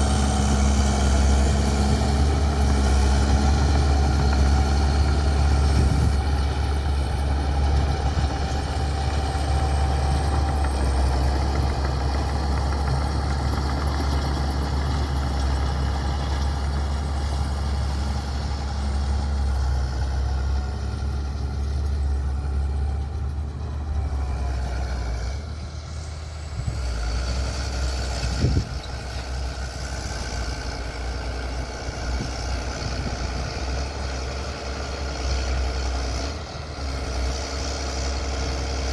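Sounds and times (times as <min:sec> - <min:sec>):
bulldozer diesel engine running: 0:00.0 - 0:38.9.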